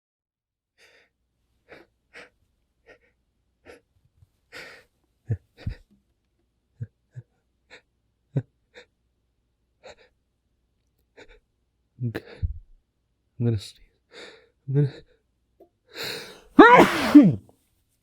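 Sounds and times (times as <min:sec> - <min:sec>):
man gasping and sniffing: 0:05.6 - 0:05.8, 0:16.0 - 0:17.4.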